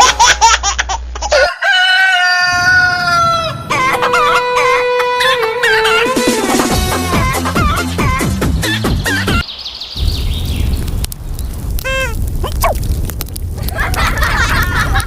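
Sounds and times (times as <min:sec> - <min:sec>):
rooster crowing: 0:01.3 - 0:04.8.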